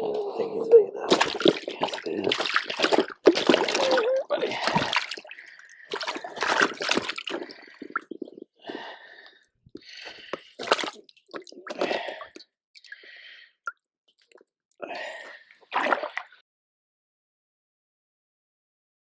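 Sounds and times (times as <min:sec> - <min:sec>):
water splashing and dripping: 0:01.1 - 0:08.2, 0:10.4 - 0:13.1.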